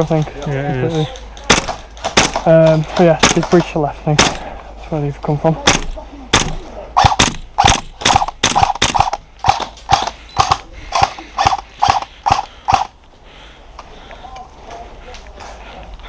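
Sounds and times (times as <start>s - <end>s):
airsoft rifle shots: 1.4s - 4.5s, 5.6s - 12.9s.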